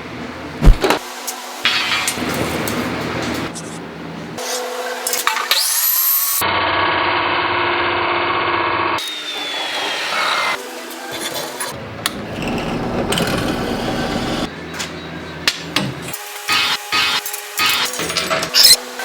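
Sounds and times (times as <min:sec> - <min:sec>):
power tool motor whine: 0:09.0 - 0:10.8, 0:12.3 - 0:14.5
sawing wood: 0:09.0 - 0:14.5.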